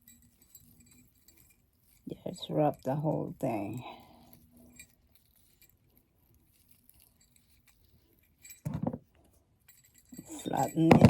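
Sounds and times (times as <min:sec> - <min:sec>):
small jingle bells jingling: 0:00.0 - 0:08.9, 0:09.6 - 0:11.0.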